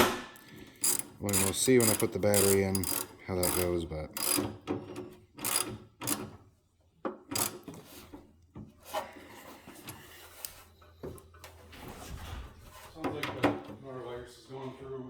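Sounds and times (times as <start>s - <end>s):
wrench rasping strokes: 0.8s - 4.5s, 5.4s - 6.2s.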